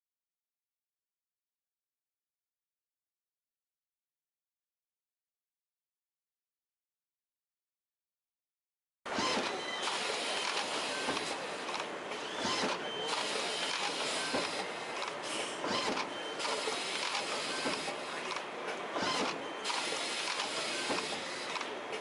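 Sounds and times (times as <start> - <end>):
injection molding machine hissing: 9.1 - 18.3, 19.0 - 21.6.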